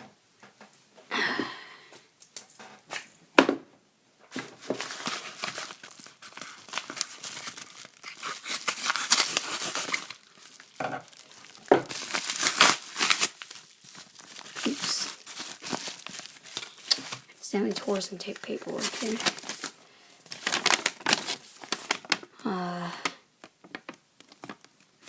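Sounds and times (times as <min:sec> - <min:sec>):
packaging tearing and crinkling: 0:04.4 - 0:22.3.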